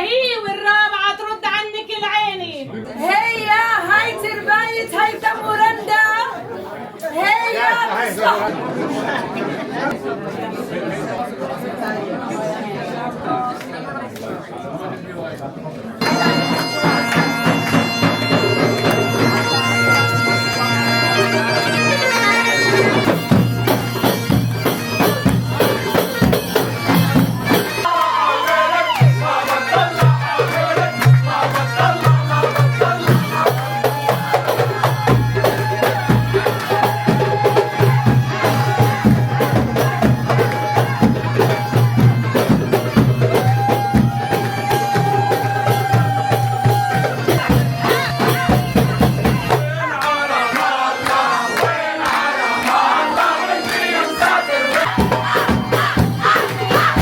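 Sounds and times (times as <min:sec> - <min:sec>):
bagpipes playing a melody: 0:16.0 - 0:28.0, 0:28.7 - 0:49.6, 0:51.3 - 0:57.0
drums keeping a rhythm: 0:16.0 - 0:50.2, 0:51.0 - 0:57.0.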